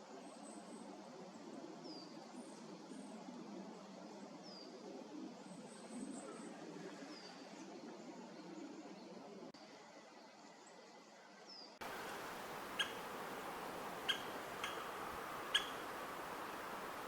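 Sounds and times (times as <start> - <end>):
background hiss: 11.8 - 17.0
thin high bird calls: 11.8 - 17.0
woodpecker kik calls: 11.8 - 17.0.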